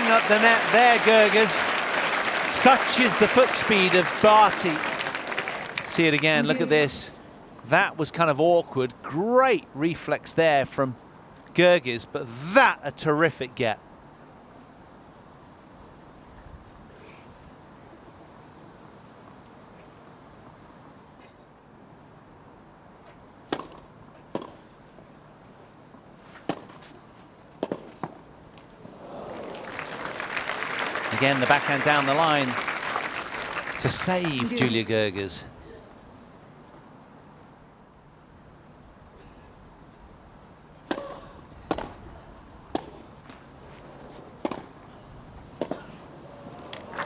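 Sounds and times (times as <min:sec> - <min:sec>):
crowd background: 0:00.0 - 0:07.2, 0:29.0 - 0:35.6
tennis ball struck by rackets: 0:23.5 - 0:24.6, 0:26.4 - 0:26.8, 0:27.6 - 0:28.2, 0:42.7 - 0:43.0, 0:44.4 - 0:44.7
rackets striking tennis ball: 0:27.6 - 0:28.2, 0:42.7 - 0:43.4.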